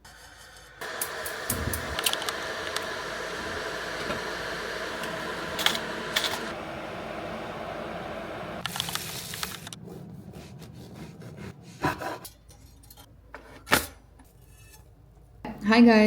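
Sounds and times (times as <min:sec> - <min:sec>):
mechanical motor hum: 0:00.7 - 0:10.9.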